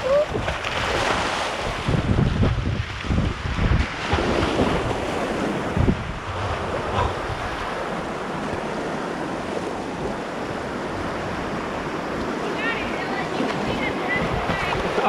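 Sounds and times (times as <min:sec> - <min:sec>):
wind buffeting microphone: 0:00.0 - 0:15.0
whitewater rapids rushing: 0:04.0 - 0:15.0.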